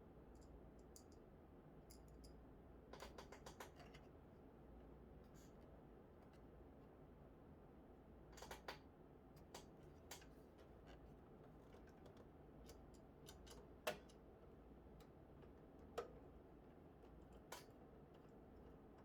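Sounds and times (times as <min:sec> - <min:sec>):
clicks and taps of computer parts: 0:12.1 - 0:14.2.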